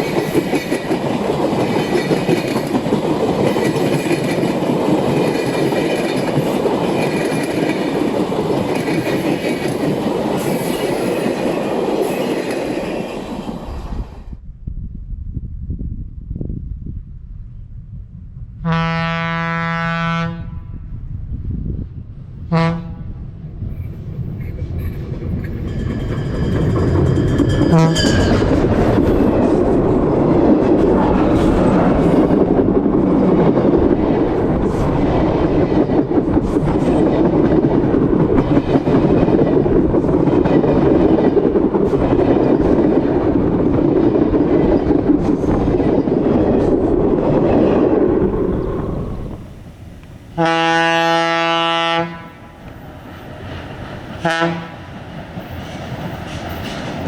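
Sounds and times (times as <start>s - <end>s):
train running past: 0.0s - 14.4s, 18.8s - 57.0s
train horn blast: 18.6s - 20.9s, 22.5s - 23.2s, 27.7s - 28.2s, 50.3s - 52.7s, 54.2s - 54.9s.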